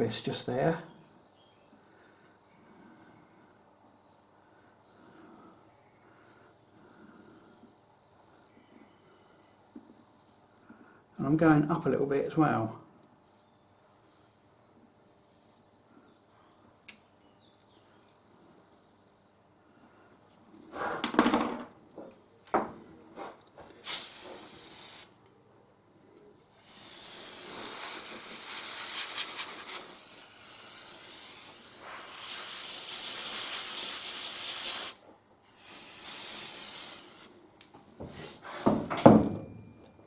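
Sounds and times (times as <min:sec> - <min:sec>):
hissing sand sweeps: 0:26.6 - 0:37.4.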